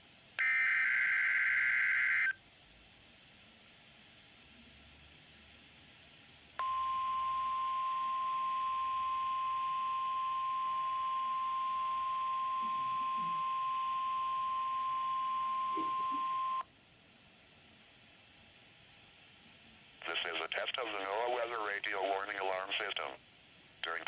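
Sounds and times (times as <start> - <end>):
steady high alarm tone: 0.4 - 2.4, 6.6 - 16.6.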